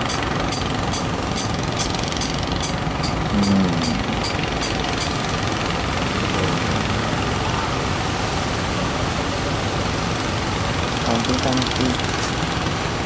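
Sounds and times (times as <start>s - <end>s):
boat engines running: 0.0s - 13.0s
surf rushing: 4.0s - 13.0s.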